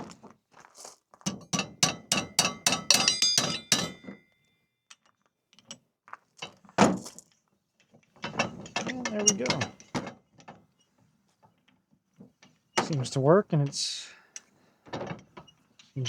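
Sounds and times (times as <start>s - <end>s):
hammer striking metal pin: 1.3s - 4.2s.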